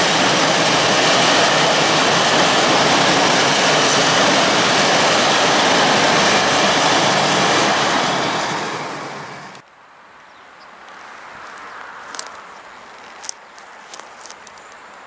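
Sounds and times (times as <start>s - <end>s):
freight train rolling past: 0.0s - 9.6s
faint outdoor background: 7.8s - 15.0s.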